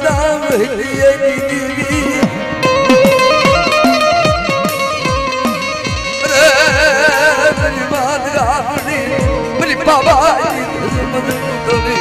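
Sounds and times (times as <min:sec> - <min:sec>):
low drum beat: 0:00.0 - 0:12.0
wavering melody line: 0:02.6 - 0:08.2.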